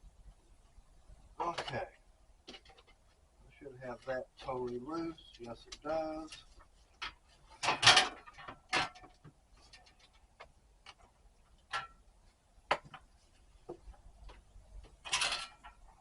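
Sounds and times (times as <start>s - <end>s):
metal parts rattling: 6.2s - 9.1s, 15.0s - 15.9s.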